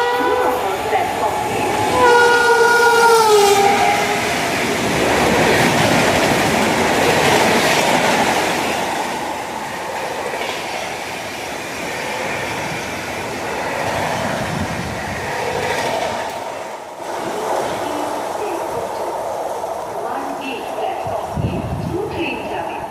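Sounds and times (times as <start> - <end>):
train wheels clattering on rails: 3.4 - 19.2.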